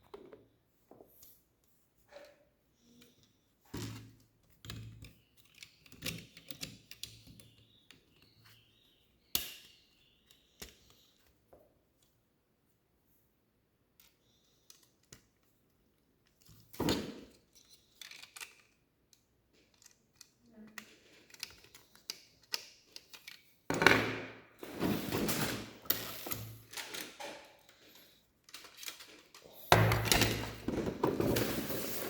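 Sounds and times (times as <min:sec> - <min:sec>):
plastic pieces clicking and rattling: 0:04.5 - 0:08.2, 0:17.3 - 0:23.6, 0:25.9 - 0:32.0.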